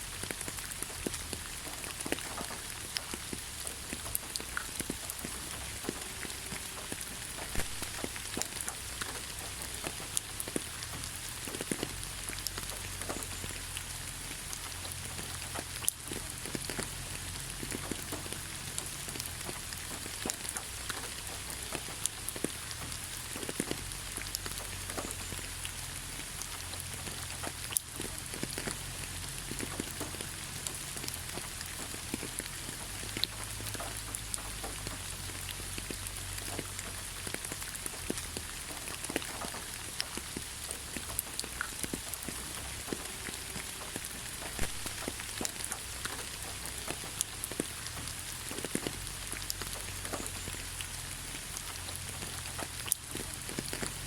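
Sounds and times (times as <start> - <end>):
rain on leaves: 0.0 - 54.0.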